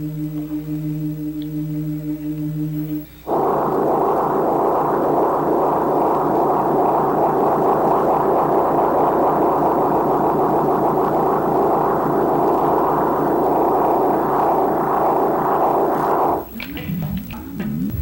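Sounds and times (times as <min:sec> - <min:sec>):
harsh rushing noise: 0:03.3 - 0:16.5.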